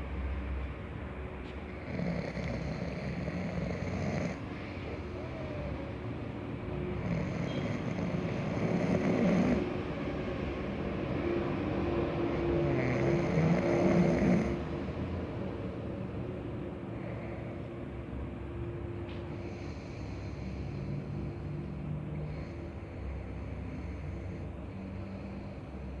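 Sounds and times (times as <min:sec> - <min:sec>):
slow snoring breaths: 0:01.4 - 0:06.0, 0:06.6 - 0:15.5, 0:16.8 - 0:18.1, 0:19.0 - 0:26.0.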